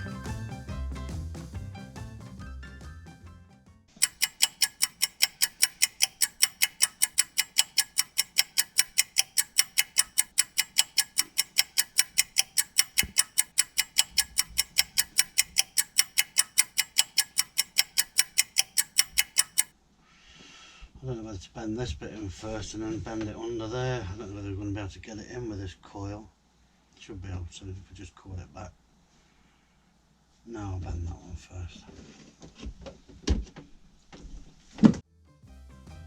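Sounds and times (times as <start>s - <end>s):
rapid even ticking: 4.0s - 19.7s.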